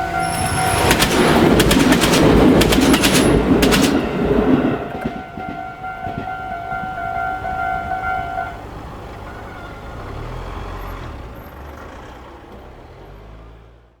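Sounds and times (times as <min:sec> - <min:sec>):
level crossing alarm: 0:00.0 - 0:09.9
train rumble: 0:00.0 - 0:11.7
road vehicle engine hum: 0:00.0 - 0:14.0.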